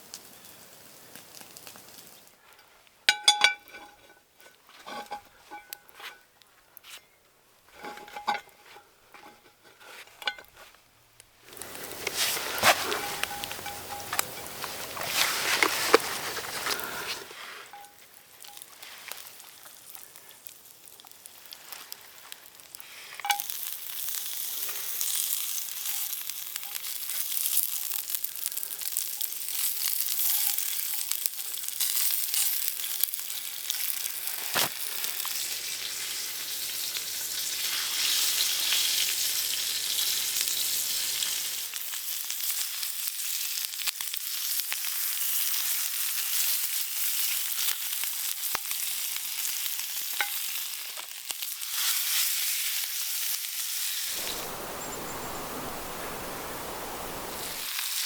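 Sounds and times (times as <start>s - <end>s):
food sizzling: 11.4s - 22.3s, 23.2s - 58.0s.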